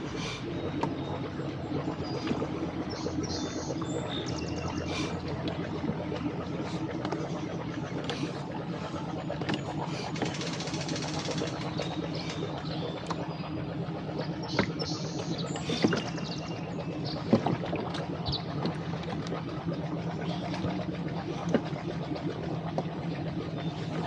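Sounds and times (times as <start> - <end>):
rowboat splashing in water: 0.0 - 24.0
steady low hum: 0.0 - 24.0.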